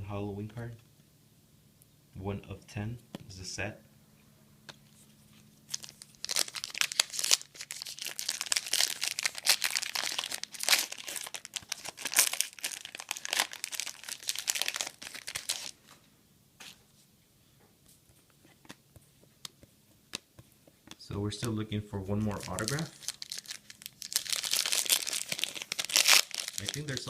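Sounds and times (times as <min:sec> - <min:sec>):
wrapper tearing and crinkling: 0:05.7 - 0:15.8, 0:22.3 - 0:27.0.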